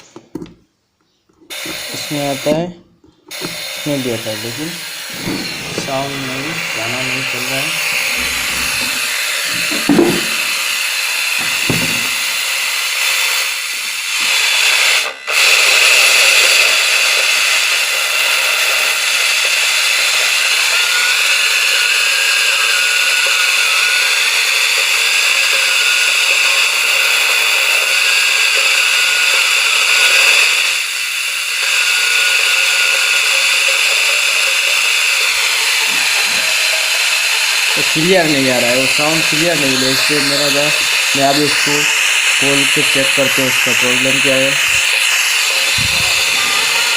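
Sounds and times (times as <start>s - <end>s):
harsh speaker hiss and buzz: 1.6s - 2.8s, 3.4s - 10.6s, 35.4s - 46.9s.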